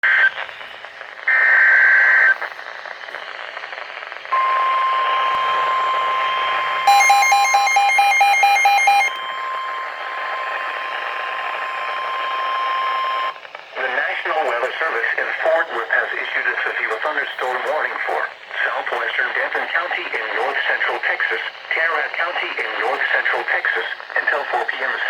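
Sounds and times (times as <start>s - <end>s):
radio hiss: 0.0s - 6.8s, 9.5s - 25.0s
steady warning alarm tone: 4.3s - 13.4s, 18.8s - 25.0s.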